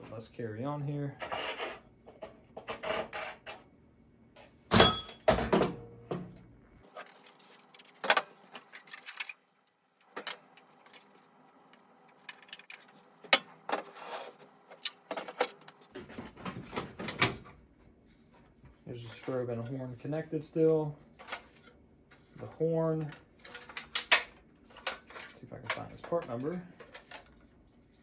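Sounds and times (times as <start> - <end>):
rustling of handled parts: 6.8 - 17.2, 23.0 - 28.0.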